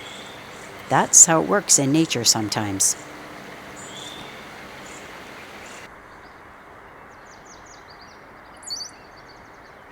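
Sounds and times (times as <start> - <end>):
faint bird chirps: 0.0 - 1.3, 2.9 - 5.9
low rumble of background noise: 0.0 - 5.9.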